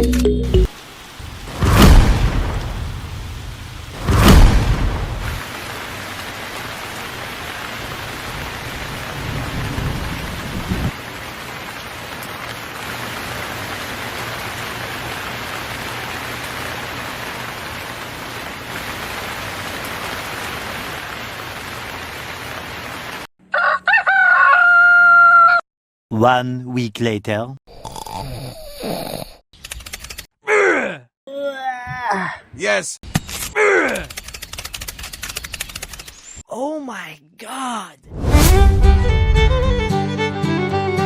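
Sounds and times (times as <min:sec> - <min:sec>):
steady rain: 0:00.6 - 0:23.3
thunder rolling: 0:01.2 - 0:05.5, 0:07.8 - 0:11.0
rooster crowing: 0:23.5 - 0:25.6.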